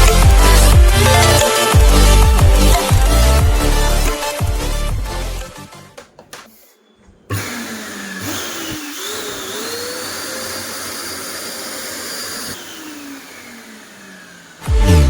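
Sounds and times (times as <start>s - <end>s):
vacuum cleaner motor whine: 7.3s - 15.0s.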